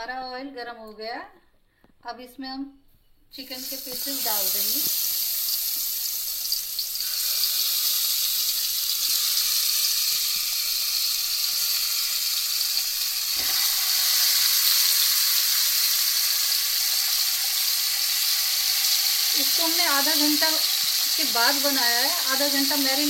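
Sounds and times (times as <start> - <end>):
chicken sizzling in hot oil: 3.4 - 23.0.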